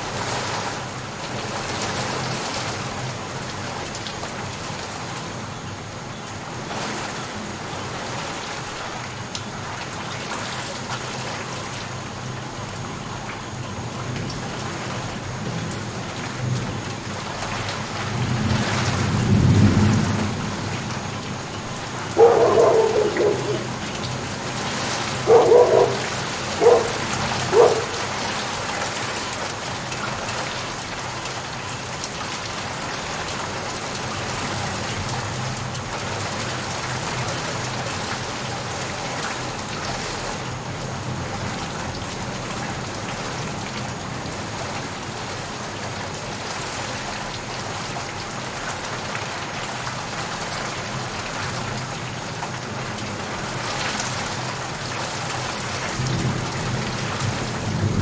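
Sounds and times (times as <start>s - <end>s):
steady rainfall: 0.0s - 58.0s
thunder rumbling: 18.1s - 28.3s
short sharp animal calls: 22.1s - 24.0s.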